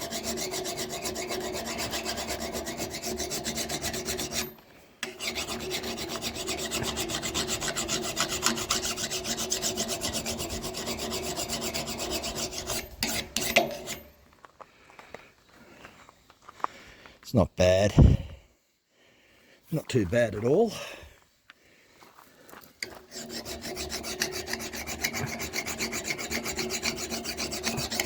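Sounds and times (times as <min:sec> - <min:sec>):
angle grinder grinding metal: 0:00.0 - 0:14.1, 0:22.8 - 0:28.0.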